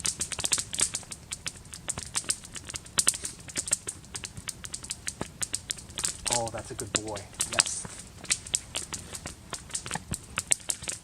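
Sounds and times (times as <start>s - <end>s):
campfire crackling and popping: 0.0s - 11.0s.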